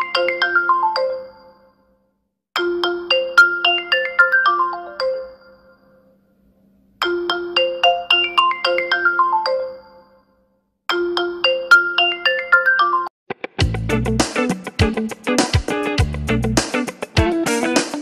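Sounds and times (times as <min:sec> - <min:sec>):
phone ringtone marimba melody: 0:00.0 - 0:01.9, 0:02.6 - 0:06.2, 0:07.0 - 0:10.3, 0:10.9 - 0:13.2.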